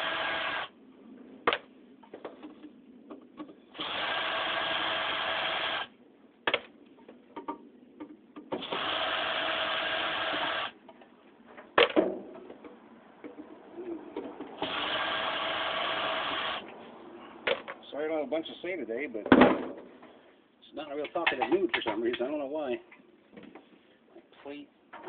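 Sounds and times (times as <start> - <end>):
cordless drill running: 0.0 - 0.7, 3.8 - 5.9, 8.6 - 10.8, 14.6 - 16.7.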